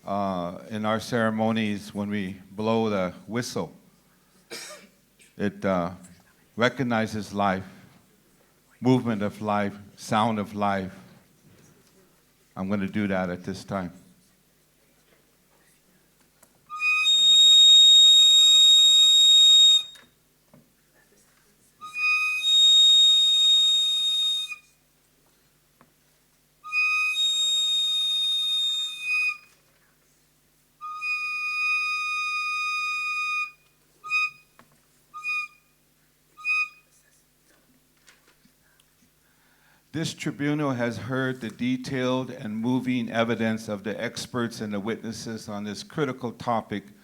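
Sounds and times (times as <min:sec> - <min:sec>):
whistle blasts: 0:16.7 - 0:20.2, 0:21.8 - 0:24.8, 0:26.6 - 0:29.6, 0:30.8 - 0:35.8, 0:36.4 - 0:36.9.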